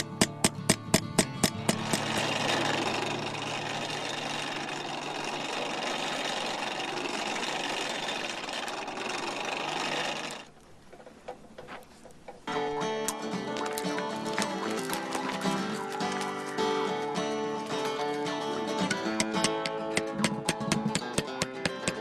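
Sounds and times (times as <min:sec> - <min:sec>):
tool rattling: 0:00.0 - 0:12.5.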